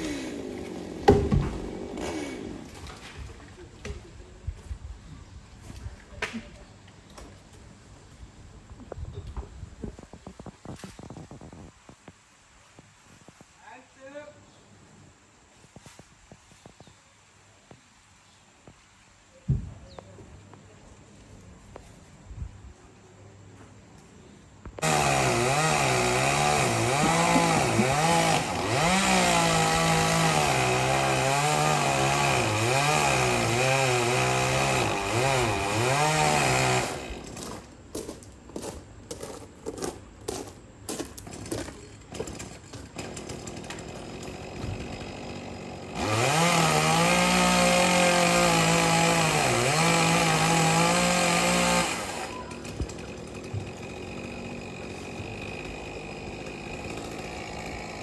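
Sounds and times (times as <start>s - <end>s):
chainsaw cutting at high revs: 0.0s - 3.1s, 24.8s - 37.5s, 42.2s - 58.0s
sharp knocks: 1.0s - 1.7s.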